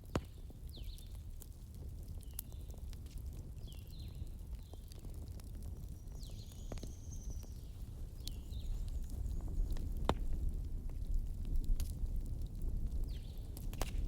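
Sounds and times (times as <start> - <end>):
wood fire crackling and popping: 0.0 - 14.0.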